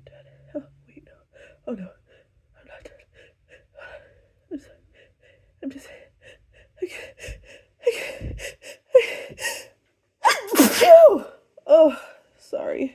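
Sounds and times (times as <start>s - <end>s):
loud sneeze: 10.2s - 11.3s
person gasping before sneeze: 10.2s - 11.3s.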